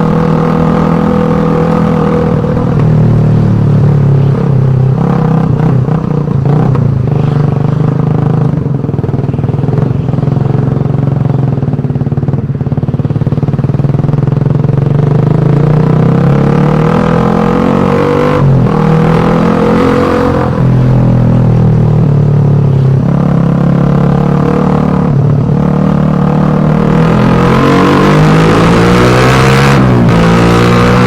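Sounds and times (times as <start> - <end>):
motorcycle engine running loudly: 0.0 - 31.0.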